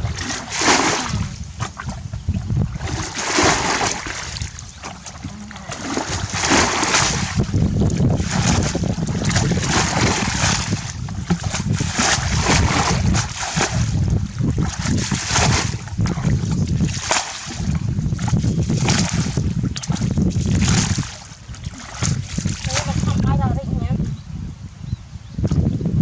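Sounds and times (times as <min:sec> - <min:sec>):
water splashing and sloshing: 0:00.0 - 0:23.8.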